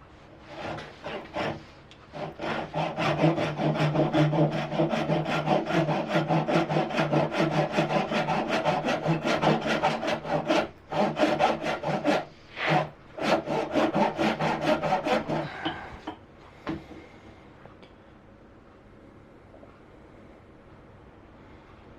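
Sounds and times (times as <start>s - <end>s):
hand saw cutting wood: 0.4s - 16.0s.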